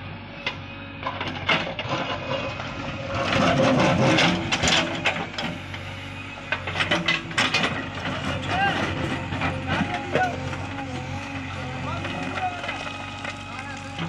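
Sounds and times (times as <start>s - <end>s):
heavy machine diesel engine: 0.0s - 14.0s.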